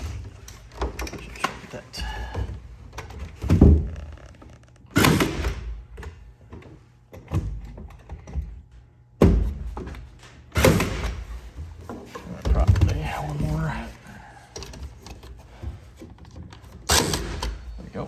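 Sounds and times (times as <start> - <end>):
thunks and knocks on wood: 3.2 - 4.2, 9.2 - 13.8.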